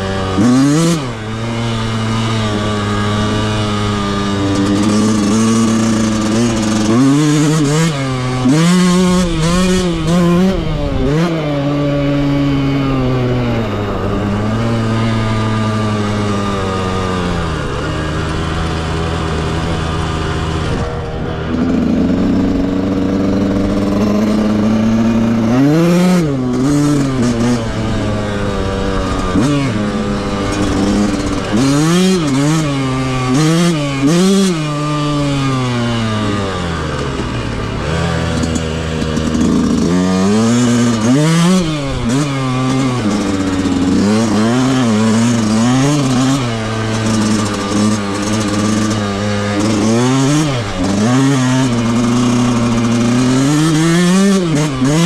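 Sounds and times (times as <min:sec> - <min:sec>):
two-stroke dirt bike engine revving: 0:00.0 - 0:55.0.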